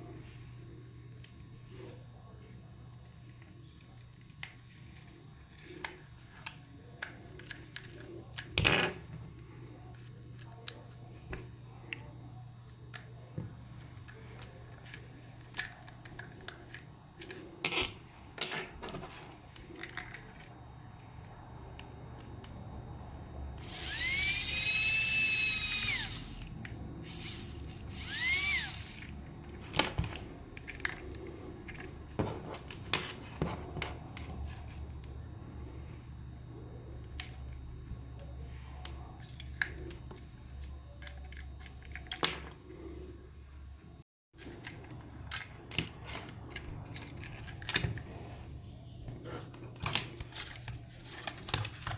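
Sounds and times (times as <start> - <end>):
small electric motor whirring: 23.6 - 29.2.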